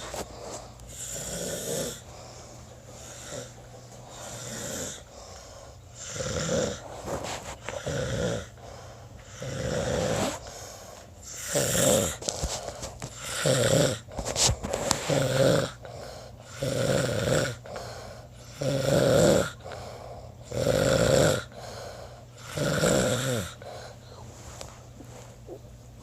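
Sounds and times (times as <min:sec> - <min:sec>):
man snoring: 0:00.9 - 0:02.3, 0:02.9 - 0:05.4, 0:06.0 - 0:06.9, 0:07.7 - 0:12.4, 0:13.1 - 0:14.2, 0:15.1 - 0:24.0.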